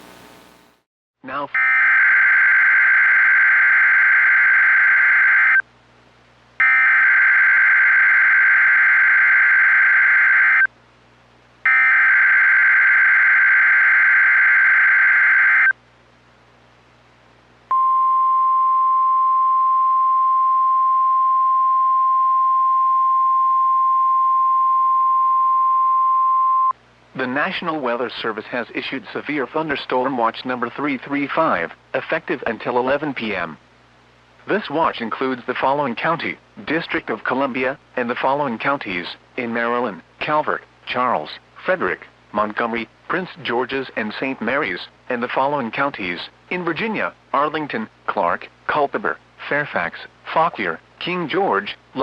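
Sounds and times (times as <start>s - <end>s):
steady warning alarm tone: 1.6s - 5.6s, 6.6s - 10.7s, 11.7s - 15.7s.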